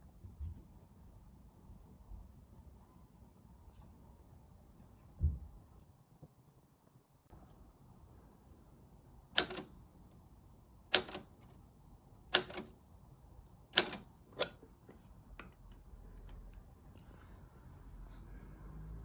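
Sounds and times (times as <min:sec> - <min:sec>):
typewriter keys clacking: 0:09.4 - 0:09.7, 0:10.9 - 0:11.5, 0:12.3 - 0:12.7, 0:13.8 - 0:14.0.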